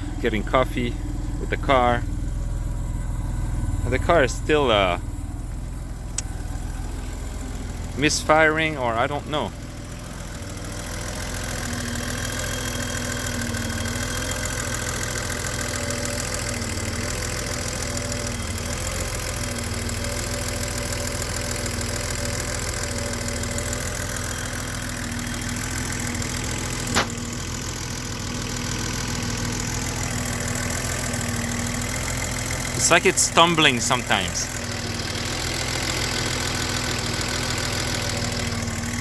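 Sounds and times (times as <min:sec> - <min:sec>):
car engine idling unevenly: 0:00.0 - 0:39.0
sharp click: 0:26.9 - 0:27.2.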